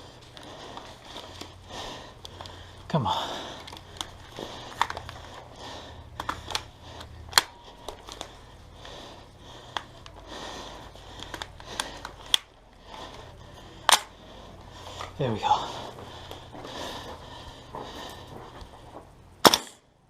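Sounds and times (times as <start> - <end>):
airsoft guns firing: 19.4 - 19.8.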